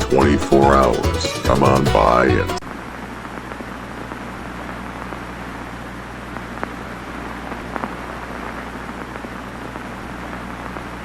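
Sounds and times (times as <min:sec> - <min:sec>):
low electrical hum: 0:00.0 - 0:11.0
radio static hiss: 0:00.0 - 0:11.0
faint crackles: 0:02.6 - 0:11.0.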